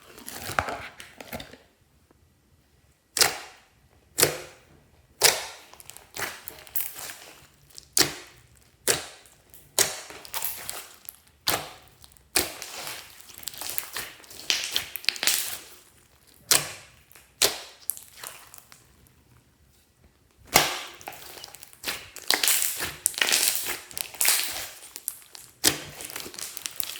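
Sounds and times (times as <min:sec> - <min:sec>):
slime popping and clicking: 0:20.5 - 0:26.9.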